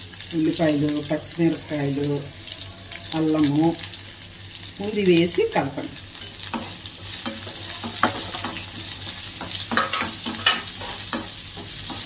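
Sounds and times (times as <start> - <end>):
vegetables sizzling in hot oil: 0.0 - 12.0
spoon scraping and tapping pan: 6.2 - 12.0.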